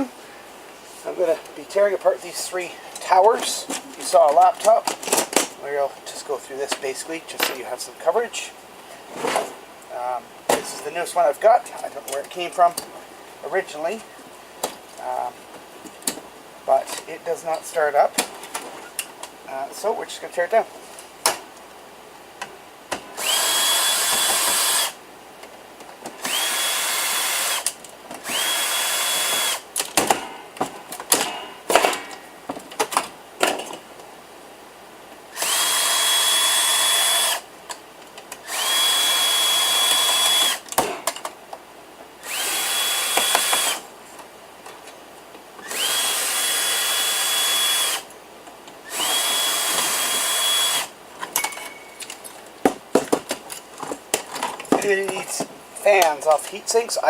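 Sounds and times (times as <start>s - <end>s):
power drill motor whine: 23.2s - 25.0s, 26.2s - 27.6s, 28.2s - 29.6s, 35.3s - 37.4s, 38.4s - 40.6s, 42.2s - 43.8s, 45.6s - 48.1s, 48.9s - 50.9s.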